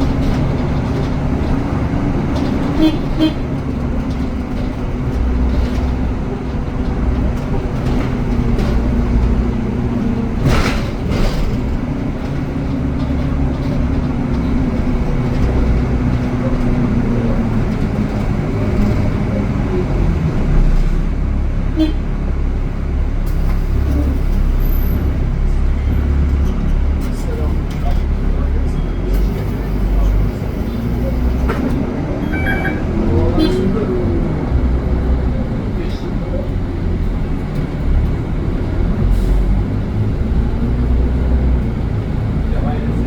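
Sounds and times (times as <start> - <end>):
bus engine running: 0.0 - 43.0
road traffic: 0.0 - 43.0.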